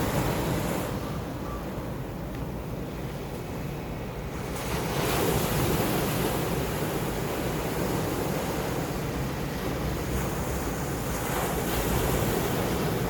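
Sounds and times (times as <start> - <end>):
wind rumble on microphone: 0.0 - 13.0.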